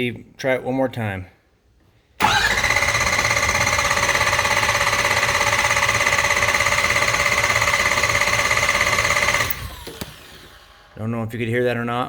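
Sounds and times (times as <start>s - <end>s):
engine cranking over: 2.2s - 11.0s
starter motor whine: 2.2s - 11.0s.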